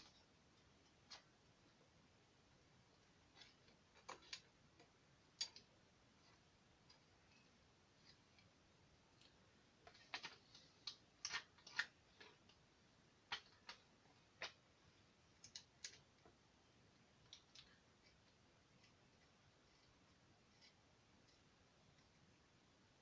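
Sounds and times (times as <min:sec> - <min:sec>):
small screws clicking and tapping: 0:03.4 - 0:05.7, 0:15.4 - 0:16.3.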